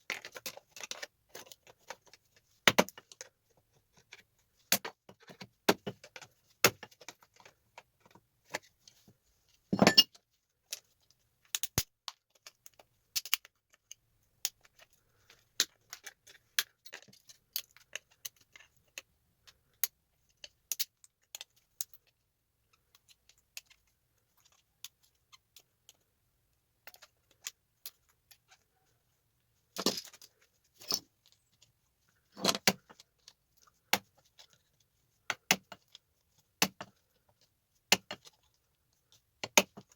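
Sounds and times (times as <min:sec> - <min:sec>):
small metallic clicks and clinks: 0:09.7 - 0:19.1.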